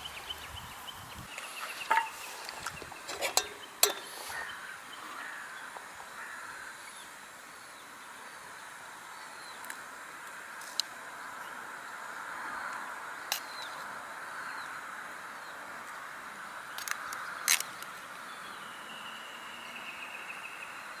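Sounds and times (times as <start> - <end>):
sharp clinks: 3.1 - 4.5.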